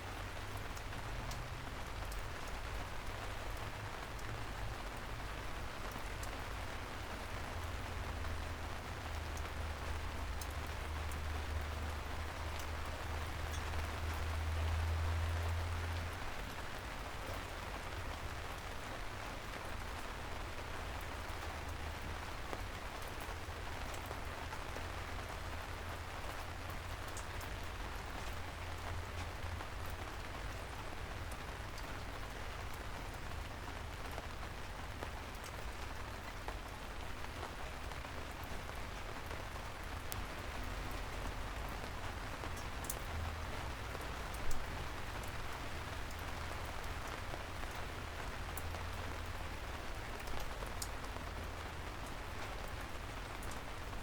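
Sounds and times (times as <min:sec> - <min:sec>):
soft rain falling: 0:00.0 - 0:54.0
dripping ticks: 0:10.4 - 0:15.6, 0:42.5 - 0:45.4, 0:53.4 - 0:53.7.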